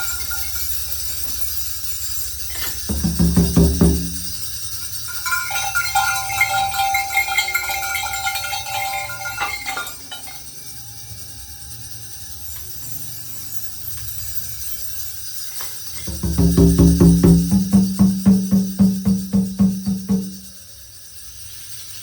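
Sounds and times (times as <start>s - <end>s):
low drum strokes: 2.9s - 4.3s, 16.0s - 20.4s.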